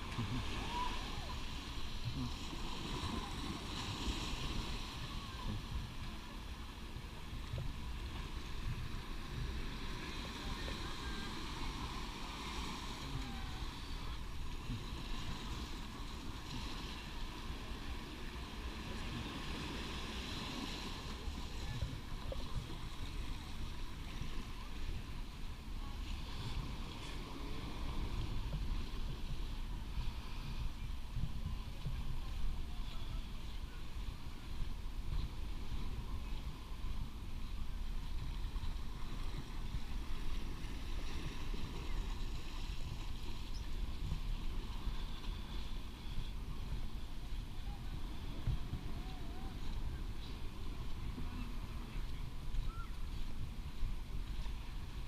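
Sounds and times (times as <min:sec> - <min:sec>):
beach surf: 0:00.0 - 0:55.0
faint distant voices: 0:00.0 - 0:55.0
wind rumbling on microphone: 0:00.0 - 0:55.0.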